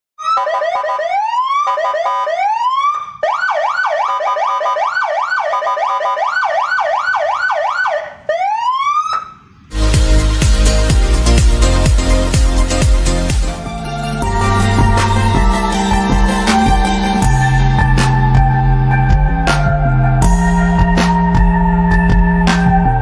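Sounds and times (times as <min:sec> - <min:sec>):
electronic siren wailing and yelping: 0:00.2 - 0:09.4, 0:13.5 - 0:23.0
electronic dance music: 0:09.7 - 0:23.0.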